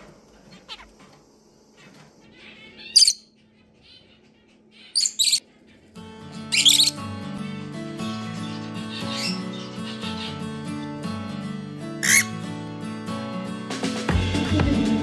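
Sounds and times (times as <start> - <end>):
quiet bird chatter: 0.0 - 7.0, 7.9 - 11.0
shrill bird calls: 2.3 - 5.9, 6.5 - 7.0, 8.2 - 10.5, 12.0 - 12.4
background music: 6.0 - 15.0.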